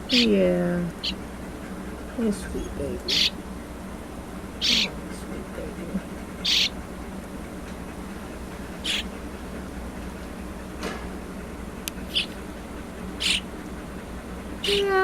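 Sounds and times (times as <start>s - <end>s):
baby bird hissing calls: 0.9s - 3.4s, 4.6s - 5.0s, 6.2s - 6.8s, 8.7s - 9.2s, 11.9s - 13.5s.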